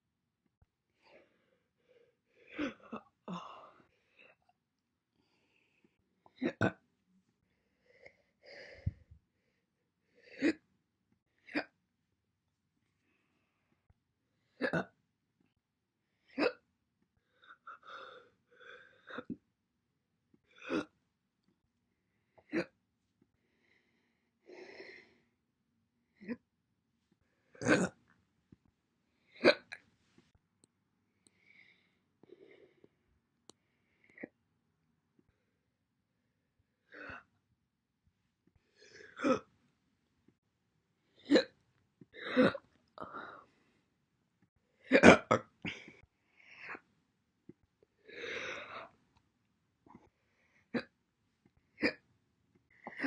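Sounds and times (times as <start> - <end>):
person hiccuping: 44.9 - 45.5.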